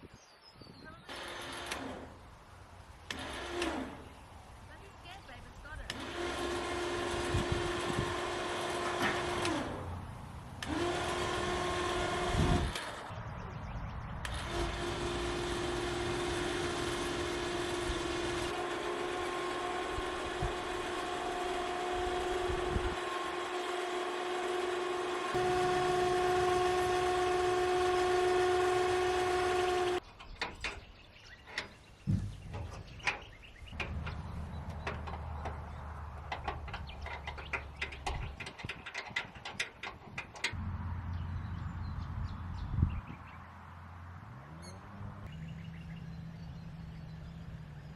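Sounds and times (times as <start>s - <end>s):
motor humming: 1.0s - 13.2s, 14.2s - 43.2s
clicks and knocks: 31.4s - 40.6s.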